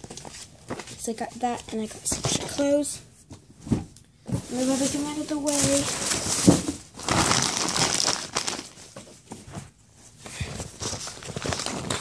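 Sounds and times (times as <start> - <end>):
packaging crinkling and rustling: 4.3 - 9.7, 10.5 - 12.0.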